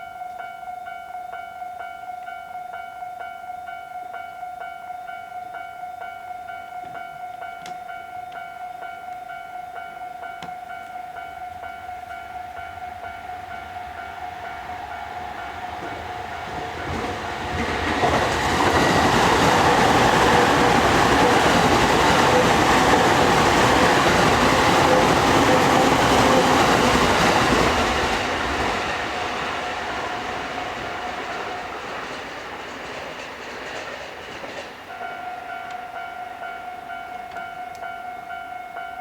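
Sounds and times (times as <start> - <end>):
train wheels rumbling on rails: 11.6 - 37.9
level crossing bell clanging: 34.8 - 39.0.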